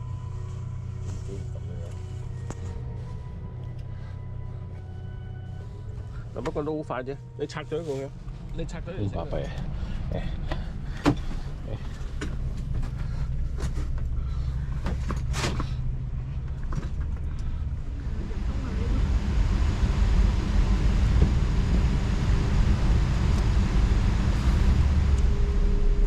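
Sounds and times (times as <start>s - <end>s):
car engine rumble: 0.0s - 26.0s
road noise rushing: 5.8s - 26.0s.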